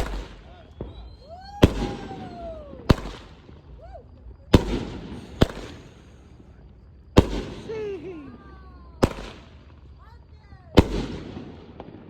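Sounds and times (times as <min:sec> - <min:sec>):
falling firework whistle: 0:00.0 - 0:06.6
fireworks bangs with echo: 0:00.0 - 0:12.0.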